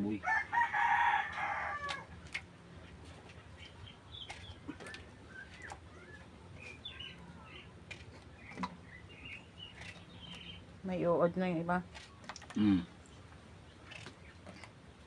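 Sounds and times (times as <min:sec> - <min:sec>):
rooster crowing: 0:00.2 - 0:02.1.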